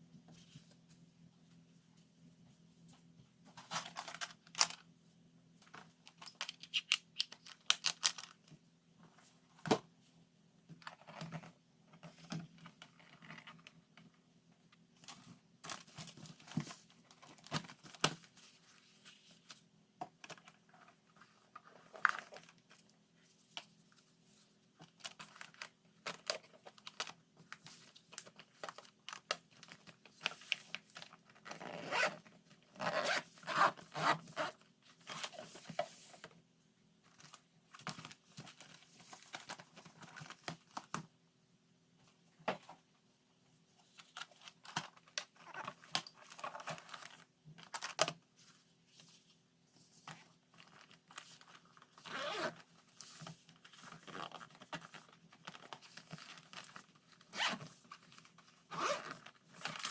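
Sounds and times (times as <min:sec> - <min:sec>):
packaging rustling and crinkling: 0:50.1 - 0:59.9.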